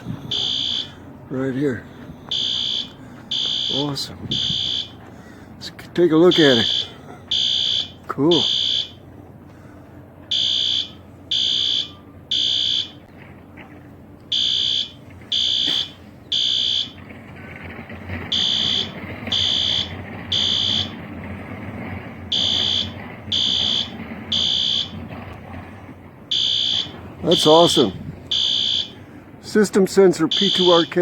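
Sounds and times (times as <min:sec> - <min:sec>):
fire alarm horn blasts: 0:00.2 - 0:01.0, 0:02.3 - 0:05.1, 0:06.3 - 0:09.0, 0:10.3 - 0:13.0, 0:14.3 - 0:17.1, 0:18.1 - 0:21.0, 0:22.3 - 0:25.3, 0:26.3 - 0:29.0, 0:30.3 - 0:31.0.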